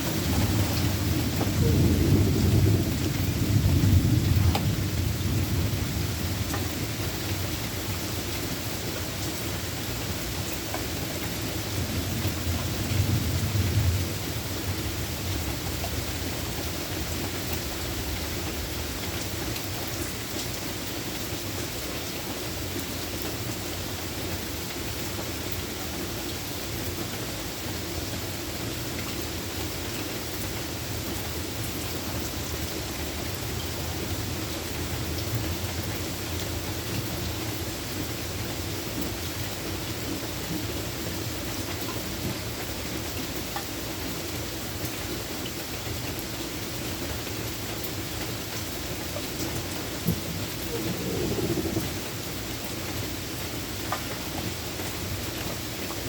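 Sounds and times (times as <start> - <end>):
thunder rumbling: 0.0 - 6.9, 49.8 - 53.2
steady rain falling: 0.0 - 56.0.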